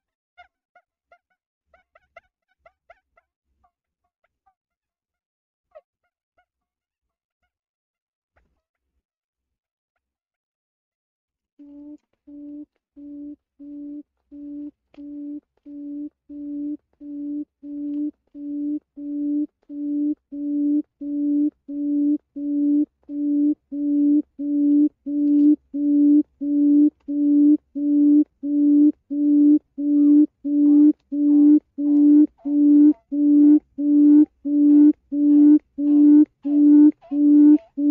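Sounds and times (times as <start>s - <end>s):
quail hooting: 11.7s - 37.9s.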